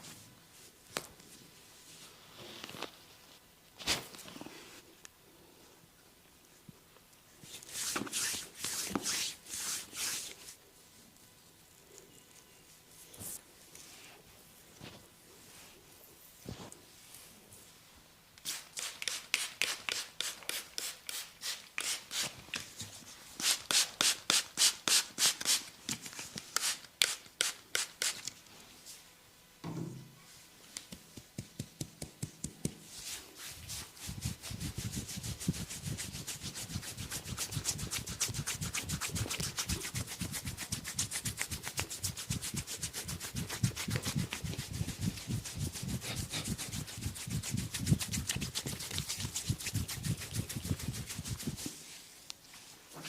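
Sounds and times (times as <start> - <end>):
hands rubbing and scratching: 7.4 - 10.6, 30.7 - 52.0.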